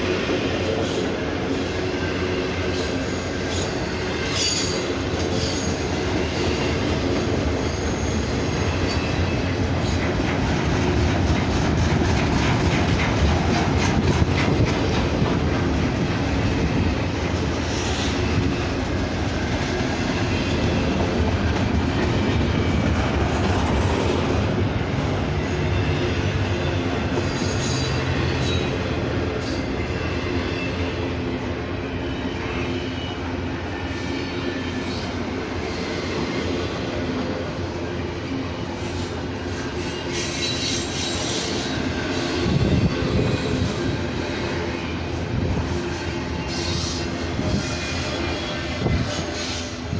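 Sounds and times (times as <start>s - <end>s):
freight train rolling past: 0.0s - 49.9s
high wheel squeals: 2.8s - 10.1s, 25.2s - 31.2s, 31.8s - 49.9s
wheels clicking over rail joints: 4.3s - 25.4s.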